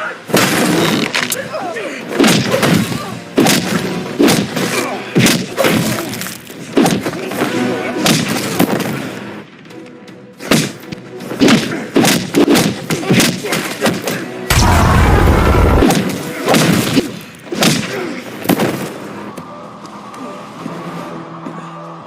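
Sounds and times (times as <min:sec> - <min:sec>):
background music: 0:00.0 - 0:22.0
heavy punches and body impacts: 0:02.2 - 0:06.1, 0:10.4 - 0:18.8
deep boom: 0:14.5 - 0:15.9.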